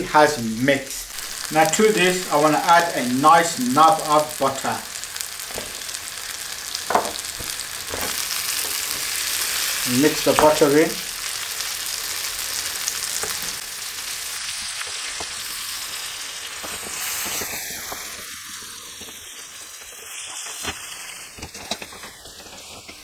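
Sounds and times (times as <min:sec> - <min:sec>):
chicken sizzling in a pan: 0:00.0 - 0:23.0
utensil knocking against pan: 0:06.8 - 0:08.2.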